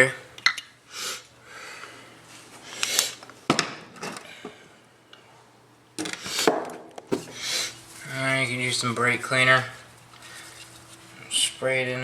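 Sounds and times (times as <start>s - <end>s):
rustling and clattering of parts: 2.8s - 4.6s.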